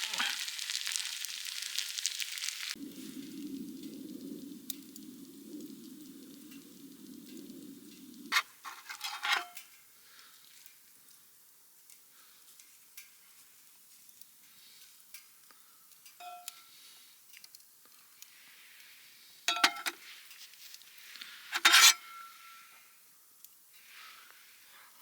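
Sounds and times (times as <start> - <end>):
metal utensils scraping cookware: 8.3 - 9.6, 19.5 - 20.0, 21.5 - 22.7.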